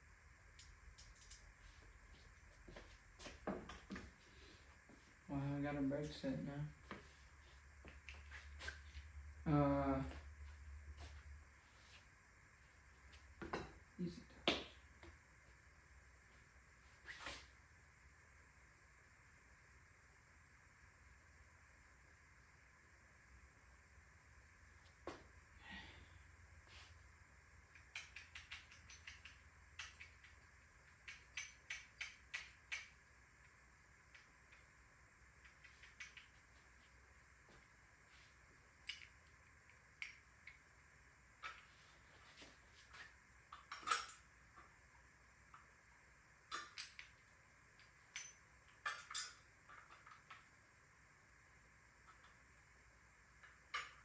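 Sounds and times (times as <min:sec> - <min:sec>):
hand tools and metal parts clicking: 0:00.6 - 0:01.5, 0:27.7 - 0:33.0, 0:38.8 - 0:39.3, 0:42.9 - 0:44.7, 0:46.5 - 0:47.2, 0:47.8 - 0:50.5
metallic clicks of hand tools: 0:27.8 - 0:33.0, 0:43.5 - 0:44.2.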